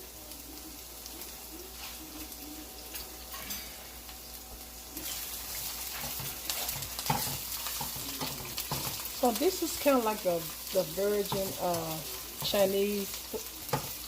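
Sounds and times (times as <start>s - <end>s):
vegetables sizzling in oil: 0.0s - 14.0s.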